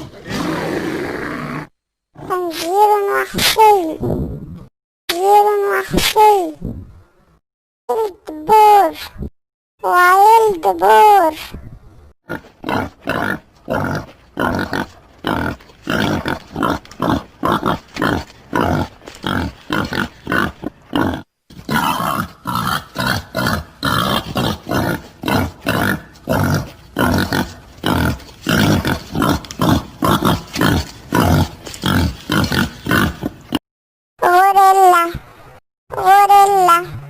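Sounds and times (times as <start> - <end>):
wild boar grunting: 12.3 - 33.6.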